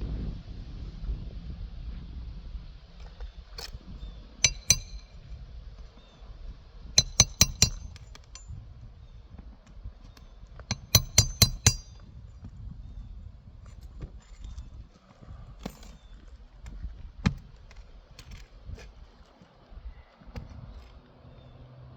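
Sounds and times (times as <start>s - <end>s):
hammer striking metal tool: 4.4s - 5.2s, 7.0s - 8.5s, 10.7s - 12.0s.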